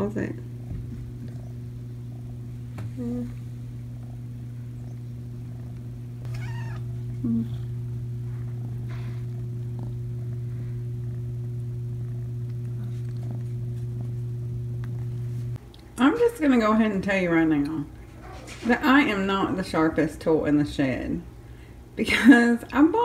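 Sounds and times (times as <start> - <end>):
steady low hum: 0.0 - 23.0
kitten meowing: 6.2 - 6.9.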